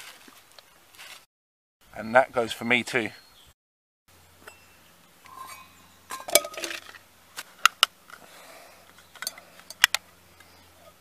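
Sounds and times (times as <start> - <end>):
metal cookware clinking: 5.2 - 6.9.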